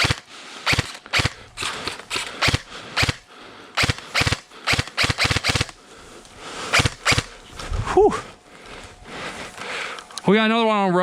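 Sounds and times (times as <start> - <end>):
airsoft guns firing: 0.0 - 5.8, 6.6 - 7.4.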